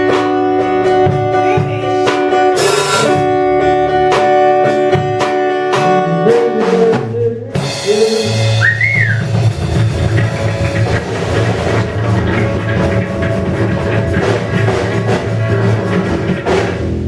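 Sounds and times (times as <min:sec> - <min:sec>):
drums and bass: 0:00.0 - 0:17.0
strummed guitar chords: 0:00.0 - 0:17.0
person singing: 0:00.9 - 0:03.4, 0:05.7 - 0:09.0.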